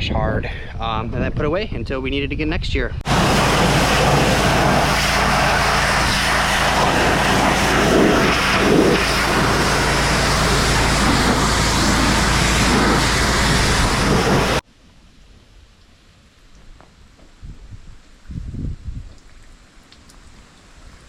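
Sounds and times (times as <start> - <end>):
engine running: 3.0 - 14.6
loud hiss: 3.0 - 14.6.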